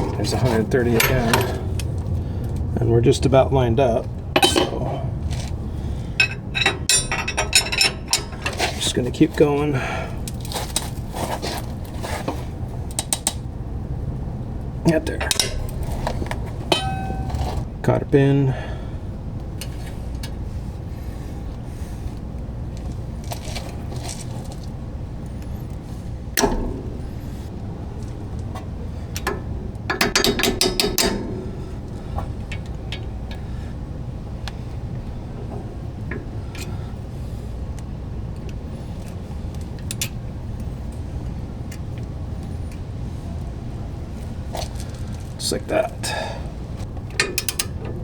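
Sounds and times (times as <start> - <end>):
steady low hum: 0.0 - 48.0
steady low rumble: 0.0 - 48.0
sharp metal clink: 16.7 - 17.6
light metallic clicks and taps: 46.9 - 48.0.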